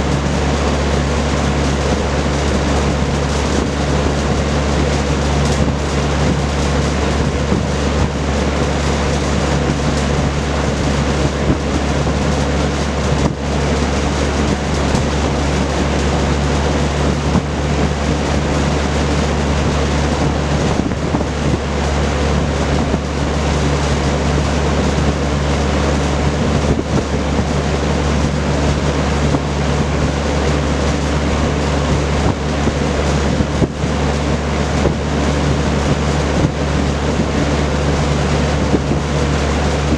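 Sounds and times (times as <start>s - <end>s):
box fan running: 0.0s - 39.9s.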